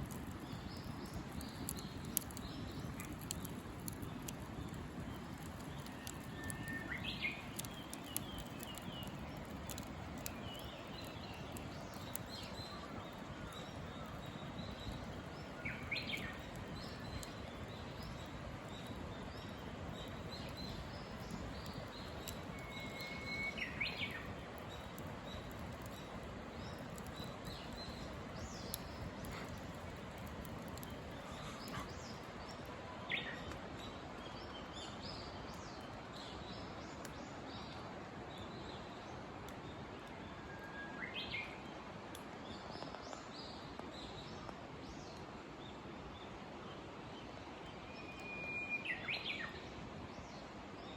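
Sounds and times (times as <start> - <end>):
bonfire crackling: 0.0 - 48.2
birds chirping faintly: 0.0 - 50.9
songbird whistling song: 5.8 - 12.9, 19.4 - 24.9, 47.8 - 49.7
outdoor hush: 21.8 - 32.8.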